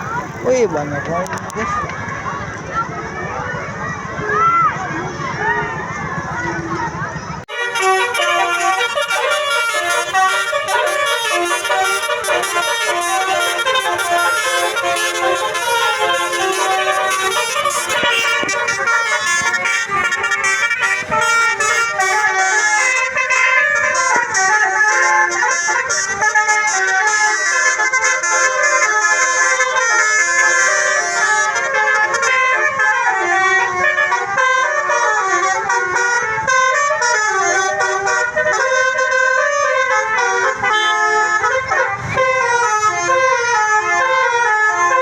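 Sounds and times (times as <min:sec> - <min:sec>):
bus air horns playing a tune: 0:02.6 - 0:45.0.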